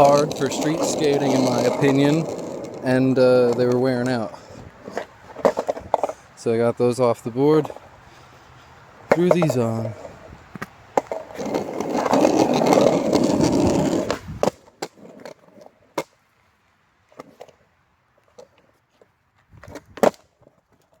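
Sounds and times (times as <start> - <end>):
skateboard clacks: 0.0 - 6.2, 9.1 - 16.2
skateboard rolling: 0.0 - 8.0, 9.0 - 21.0.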